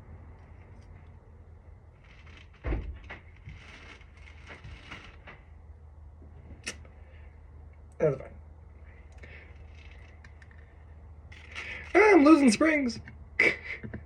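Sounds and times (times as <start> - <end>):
steady low hum: 0.0 - 14.0
small metal parts clicking: 11.3 - 12.2.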